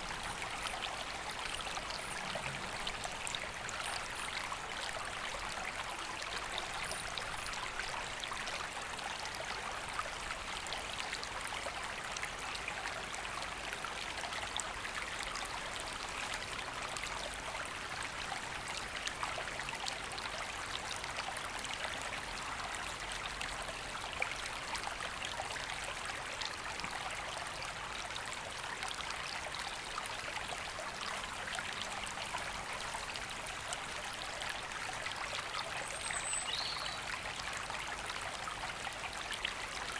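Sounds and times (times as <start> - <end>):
river flowing: 0.0 - 11.1.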